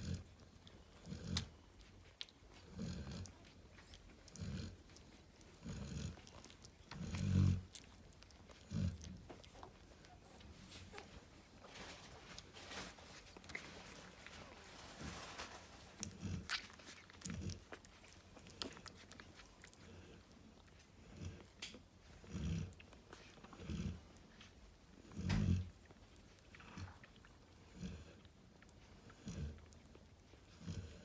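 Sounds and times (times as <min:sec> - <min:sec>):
small clicks and smacks: 0:00.2 - 0:30.8
dog snoring: 0:07.0 - 0:07.7, 0:22.1 - 0:22.8, 0:25.0 - 0:25.7.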